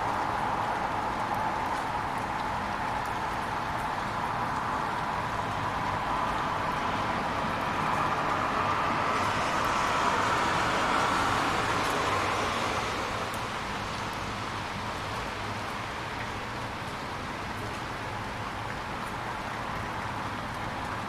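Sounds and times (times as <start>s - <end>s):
vehicle passing on wet road: 0.0s - 15.9s
rain hiss: 0.0s - 17.2s.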